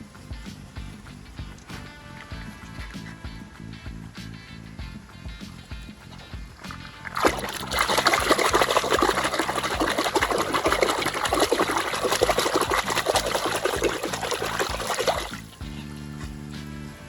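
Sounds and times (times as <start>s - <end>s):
faint background music: 0.0s - 17.0s
water running and splashing: 4.8s - 15.7s.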